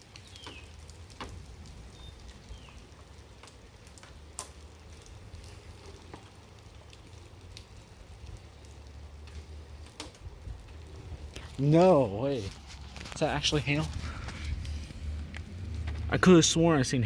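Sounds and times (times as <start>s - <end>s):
raindrops tapping on hard surfaces: 0.0s - 16.8s
steady hiss: 0.0s - 17.0s
low rumble: 12.4s - 17.0s.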